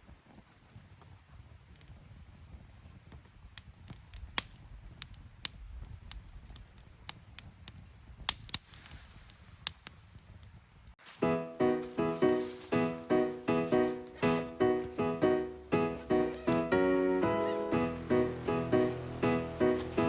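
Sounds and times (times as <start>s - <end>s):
campfire crackling and popping: 0.4s - 11.2s, 12.4s - 20.0s
piano-like music: 11.0s - 20.0s.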